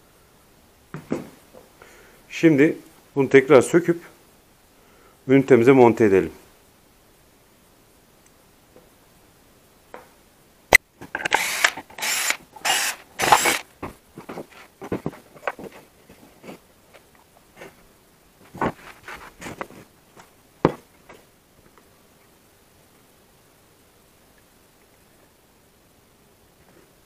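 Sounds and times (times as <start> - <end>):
small parts clicking and knocking: 11.1 - 13.6
short scraping bursts: 11.3 - 13.6.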